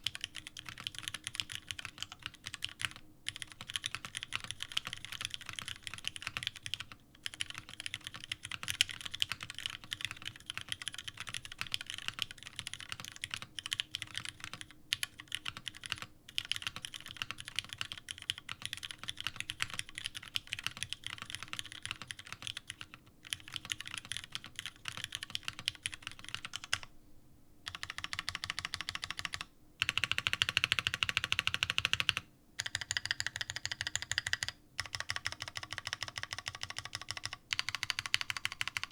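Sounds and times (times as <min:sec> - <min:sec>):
typing on mechanical keyboard: 0:00.0 - 0:26.9, 0:27.7 - 0:38.9.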